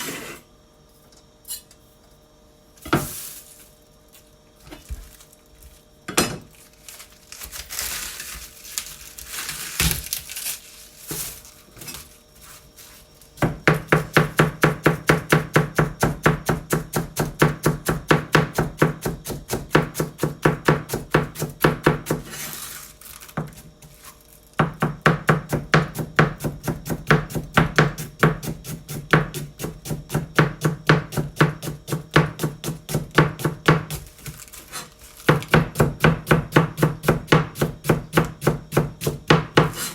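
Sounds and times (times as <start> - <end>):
cabbage rustling: 6.5 - 13.2, 22.3 - 24.4, 34.0 - 35.5
knife chopping cabbage on board: 13.4 - 22.6, 23.4 - 39.9.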